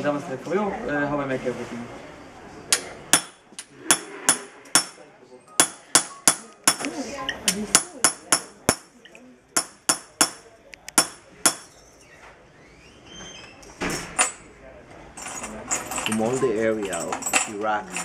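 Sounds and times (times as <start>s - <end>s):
hammer tapping copper: 2.7s - 5.0s, 5.6s - 6.9s, 7.7s - 8.9s, 9.6s - 11.7s.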